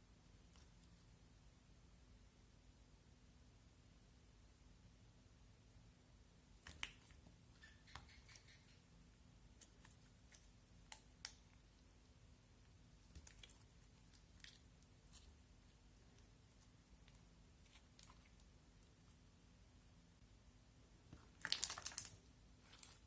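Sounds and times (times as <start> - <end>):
slime crackling and popping: 21.2 - 23.0.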